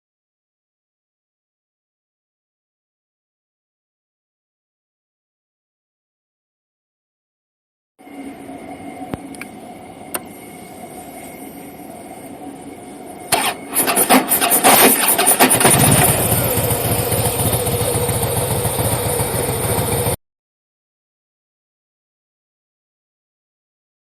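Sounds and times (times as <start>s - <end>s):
motorcycle starter cranking: 13.3s - 20.1s
motorcycle engine running: 13.4s - 20.2s.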